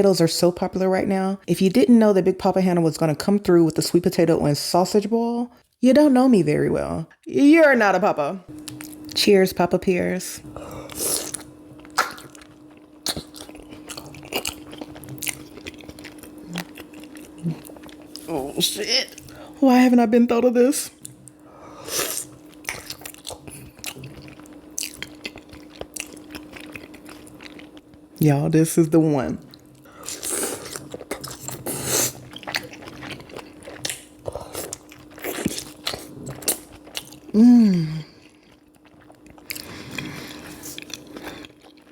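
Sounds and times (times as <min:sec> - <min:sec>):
faint steady hum: 0:00.0 - 0:41.9
close-miked chewing: 0:10.9 - 0:18.5, 0:22.1 - 0:27.8, 0:29.5 - 0:37.3, 0:38.1 - 0:41.9
wet mouth smacks: 0:12.0 - 0:12.3.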